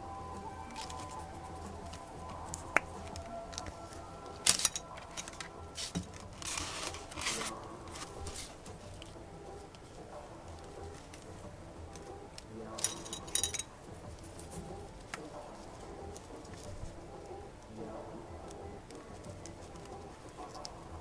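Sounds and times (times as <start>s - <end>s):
soft background music: 0.0s - 21.0s
scratchy strokes on plastic sheet: 5.8s - 8.6s.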